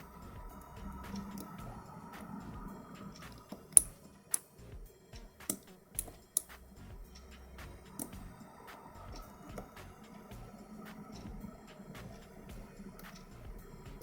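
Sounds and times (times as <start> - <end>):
lock pick clicking in lock: 5.4 - 6.5.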